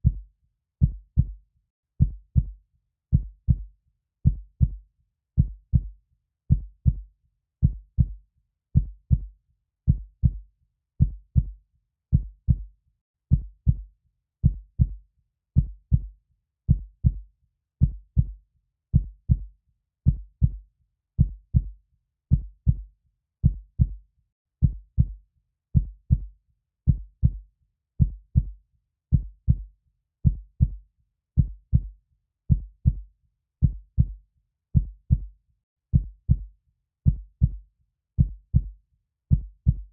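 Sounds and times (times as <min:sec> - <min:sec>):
heartbeat lub-dub thumps: 0:00.8 - 0:01.4, 0:02.0 - 0:04.8, 0:05.4 - 0:05.9, 0:06.5 - 0:08.2, 0:08.8 - 0:09.3, 0:09.9 - 0:10.4, 0:11.0 - 0:12.7, 0:13.3 - 0:15.0, 0:15.6 - 0:16.1, 0:16.7 - 0:17.2, 0:17.8 - 0:18.4, 0:19.0 - 0:19.5, 0:20.1 - 0:20.6, 0:21.2 - 0:21.7, 0:22.3 - 0:24.0, 0:24.6 - 0:25.2, 0:25.8 - 0:26.3, 0:26.9 - 0:27.4, 0:28.0 - 0:30.8, 0:31.4 - 0:31.9, 0:32.5 - 0:33.0, 0:33.6 - 0:34.2, 0:34.8 - 0:35.3, 0:35.9 - 0:36.5, 0:37.1 - 0:37.6, 0:38.2 - 0:39.9.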